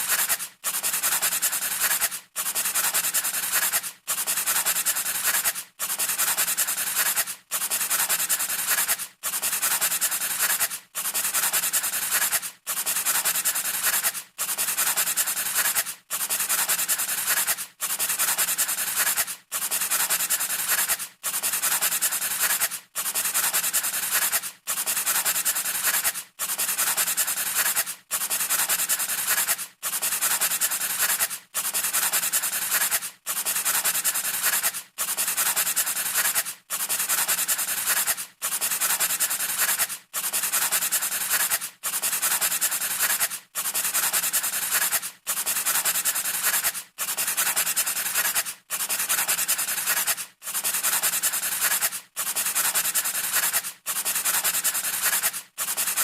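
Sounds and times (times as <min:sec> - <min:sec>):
scratchy rubbing strokes: 0:00.0 - 0:21.0, 0:21.6 - 0:56.0.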